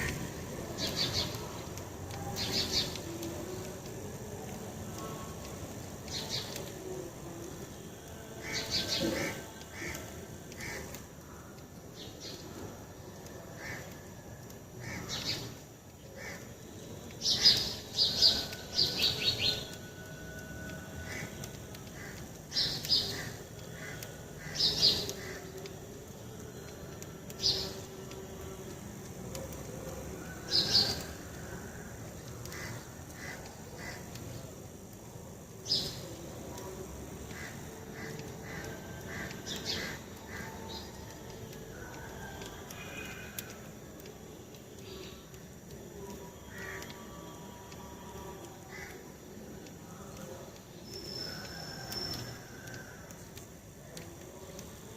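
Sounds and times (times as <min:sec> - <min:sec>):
wild birds calling: 0:08.4 - 0:11.4, 0:37.3 - 0:41.3.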